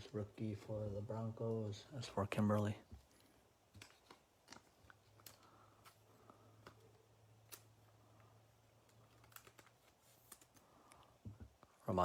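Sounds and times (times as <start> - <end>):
trading cards clicking: 3.7 - 6.0, 8.8 - 10.7.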